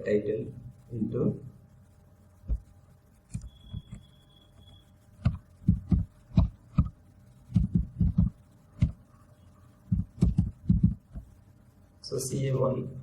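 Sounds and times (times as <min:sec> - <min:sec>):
computer keyboard typing: 0:05.2 - 0:09.0, 0:09.9 - 0:11.2.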